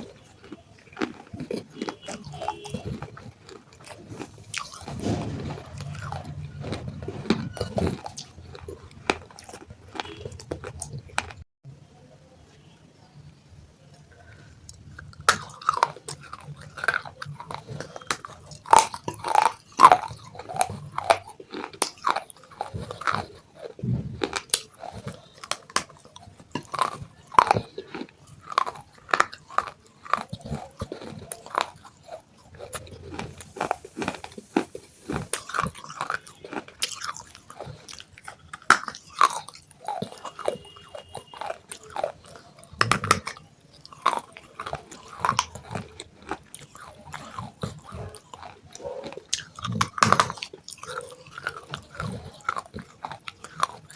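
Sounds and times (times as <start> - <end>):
chewing clay with dry crunches: 0.0 - 11.5, 13.9 - 53.9.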